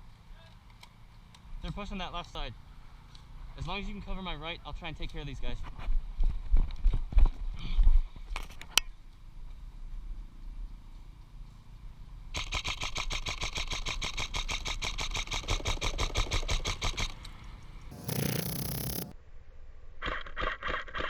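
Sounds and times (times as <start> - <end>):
sharp clicks: 17.9 - 19.1.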